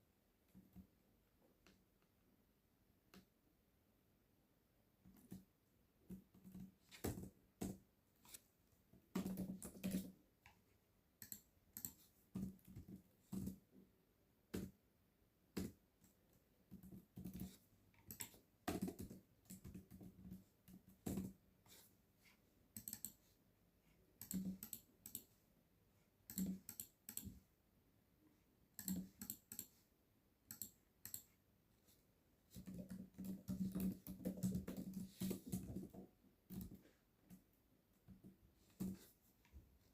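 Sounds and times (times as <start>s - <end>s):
mouse clicks: 22.8s - 23.2s, 28.8s - 29.8s, 30.5s - 31.3s
typing on computer keyboard: 22.8s - 23.2s, 24.2s - 25.3s, 26.3s - 27.3s, 28.8s - 29.8s, 30.5s - 31.3s.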